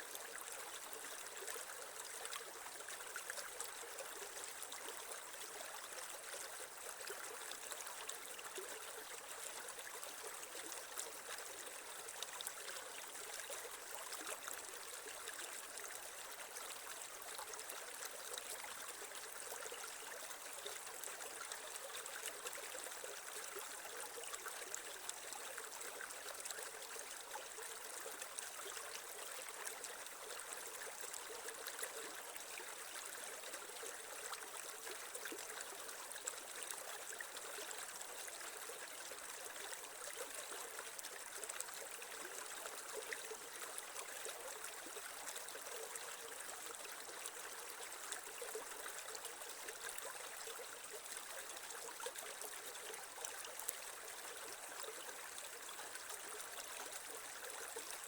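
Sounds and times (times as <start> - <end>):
creek water babbling over stones: 0.0 - 58.0.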